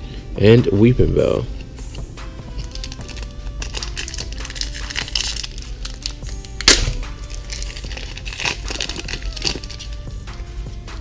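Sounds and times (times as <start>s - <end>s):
background music: 0.0s - 11.0s
wrapper crinkling and tearing: 2.5s - 10.1s.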